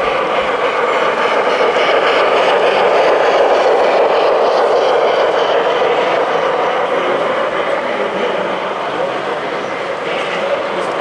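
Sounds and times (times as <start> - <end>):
model train wheels rolling on rail: 0.0 - 11.0.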